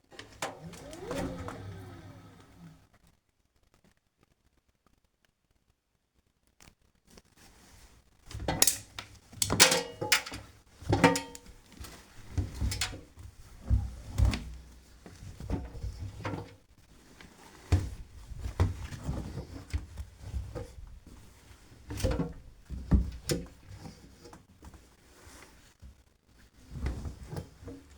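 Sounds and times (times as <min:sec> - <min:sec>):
washing machine knocking and thudding: 0:09.5 - 0:11.4.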